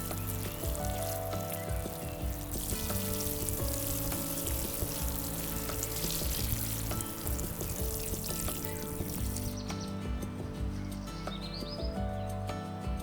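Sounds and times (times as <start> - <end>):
food sizzling in a pan: 0.0 - 9.5
soft background music: 0.0 - 13.0.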